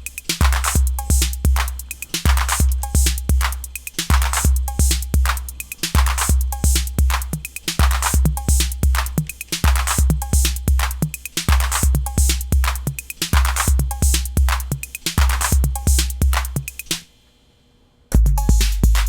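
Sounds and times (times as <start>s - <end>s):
hissy hi-hat and cymbal: 0.0s - 19.0s
booming bass drums: 18.2s - 19.0s.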